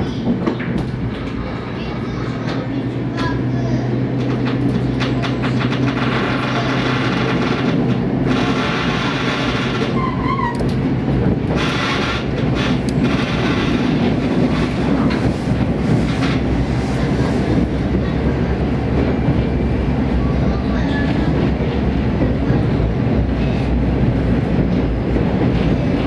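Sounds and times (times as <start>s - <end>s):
wheels rumbling on rail: 0.0s - 26.0s.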